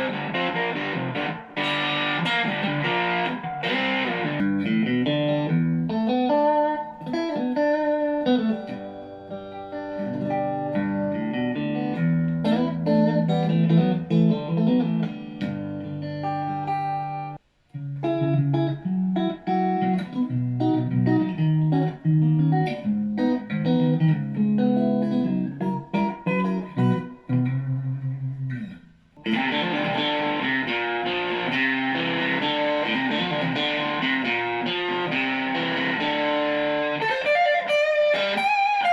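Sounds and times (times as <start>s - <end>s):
electric guitar playing: 0.0s - 38.9s.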